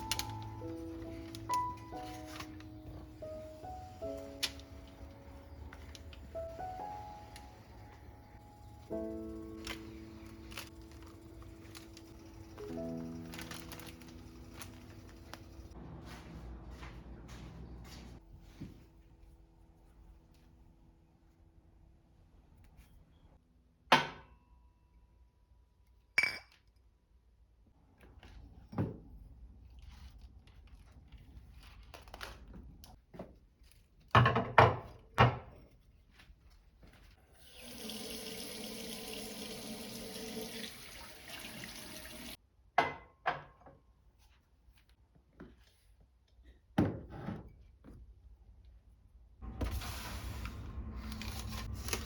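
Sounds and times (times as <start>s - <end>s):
water tap running: 37.3s - 42.4s.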